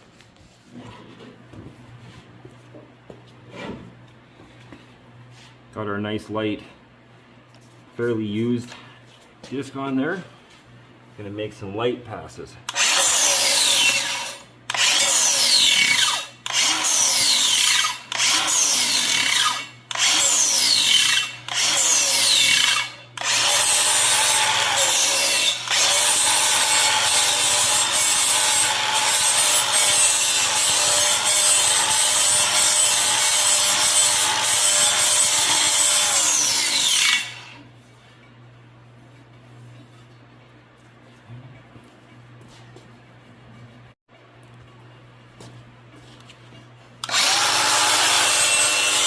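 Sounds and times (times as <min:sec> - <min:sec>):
angle grinder sanding metal: 0:12.7 - 0:37.6, 0:47.0 - 0:49.0.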